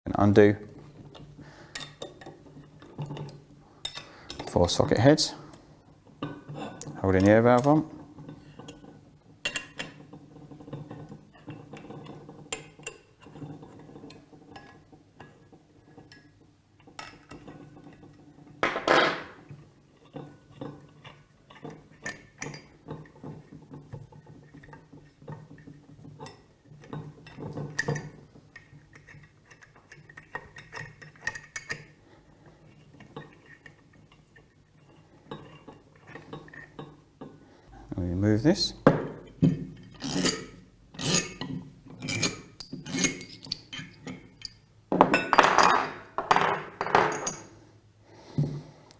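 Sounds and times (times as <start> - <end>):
tools clinking on metal: 38.6 - 47.6.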